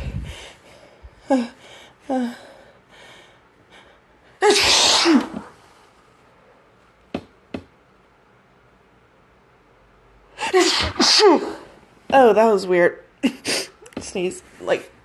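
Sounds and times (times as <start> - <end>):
woman catching breaths: 0.0 - 4.0
woman sneezing: 4.4 - 5.5, 10.4 - 11.7, 13.3 - 13.8.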